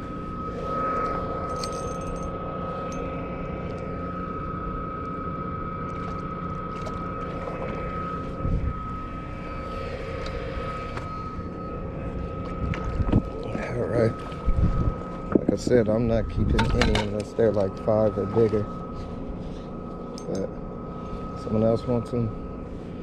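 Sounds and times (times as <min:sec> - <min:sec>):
mechanical drone with high whine: 0:00.0 - 0:23.0.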